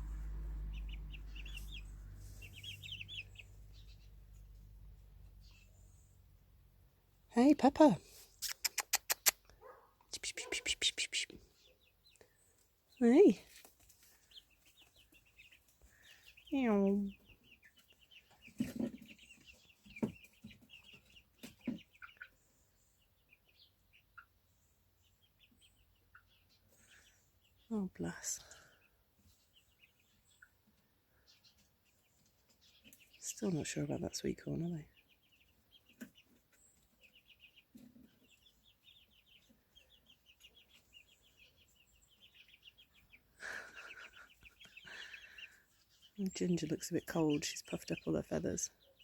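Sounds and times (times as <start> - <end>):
high chick chirps: 0.0 - 5.8, 7.7 - 12.2, 28.7 - 49.0.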